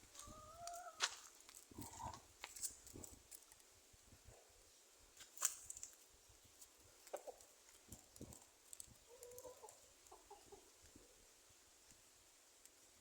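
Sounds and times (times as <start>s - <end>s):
roosters clucking softly: 6.6s - 11.2s.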